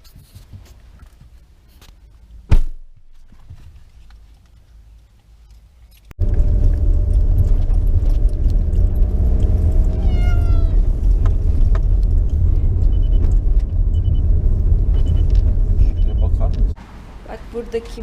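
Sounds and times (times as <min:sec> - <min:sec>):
low rumble: 0:06.2 - 0:16.8
cat meowing: 0:09.9 - 0:10.9.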